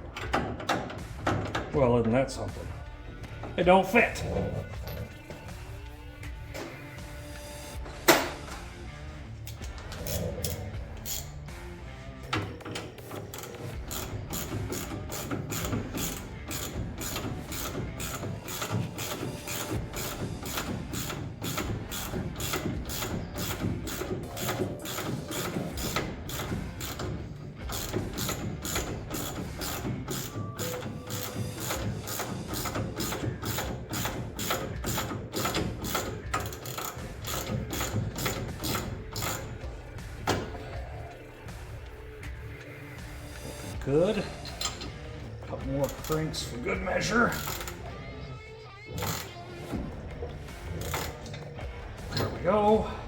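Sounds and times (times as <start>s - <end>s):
socket ratchet clicking: 9.4s - 11.4s, 12.5s - 39.5s, 47.4s - 47.9s, 50.7s - 51.5s.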